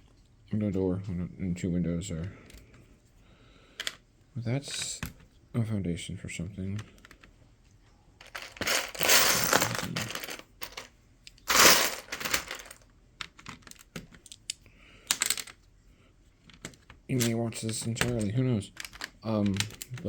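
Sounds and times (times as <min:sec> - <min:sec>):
plastic bricks clicking and rattling: 0:08.2 - 0:14.5, 0:16.5 - 0:20.0.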